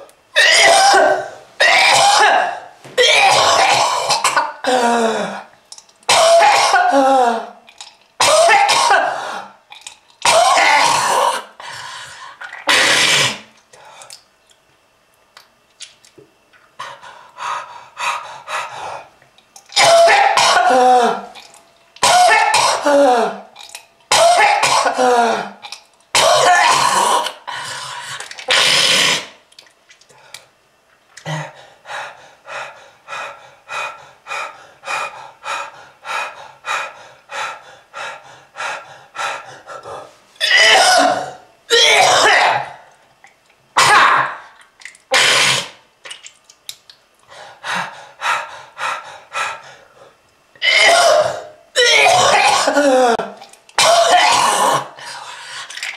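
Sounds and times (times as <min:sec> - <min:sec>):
person coughing harshly: 0:00.4 - 0:05.0, 0:06.1 - 0:07.5, 0:08.2 - 0:09.4, 0:10.2 - 0:11.5, 0:12.6 - 0:13.4, 0:19.8 - 0:21.4, 0:22.0 - 0:23.4, 0:24.1 - 0:25.6, 0:26.2 - 0:27.4, 0:40.4 - 0:42.8, 0:45.1 - 0:45.8, 0:50.6 - 0:55.0.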